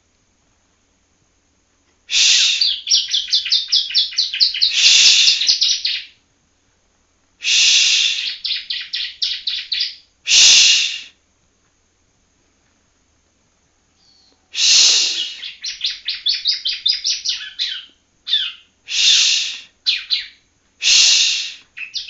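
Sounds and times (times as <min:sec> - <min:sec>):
bird song phrases: 0:02.3 - 0:06.2, 0:08.2 - 0:10.1, 0:14.0 - 0:20.5, 0:21.6 - 0:22.0
harsh buzzy bird note: 0:04.7 - 0:05.6, 0:14.6 - 0:15.6.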